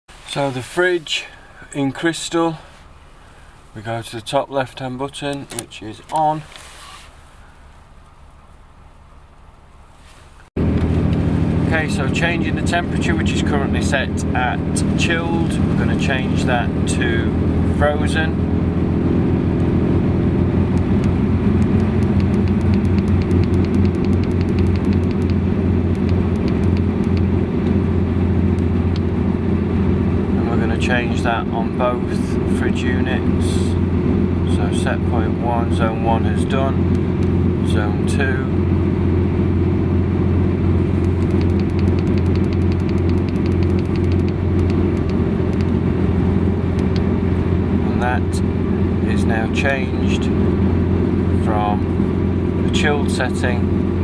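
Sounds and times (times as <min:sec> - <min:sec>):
diesel engine idling: 0:10.6 - 0:54.0
faint rapid ticking: 0:21.0 - 0:27.3, 0:41.0 - 0:45.8.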